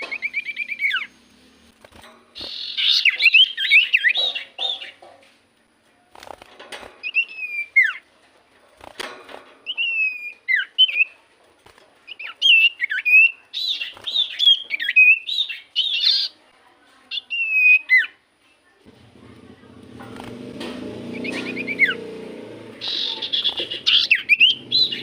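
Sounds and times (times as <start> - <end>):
songbird whistling: 0.0 - 1.2, 2.4 - 5.0, 7.0 - 8.0, 9.6 - 11.2, 12.1 - 16.3, 17.1 - 18.2, 21.1 - 22.0, 22.8 - 25.0.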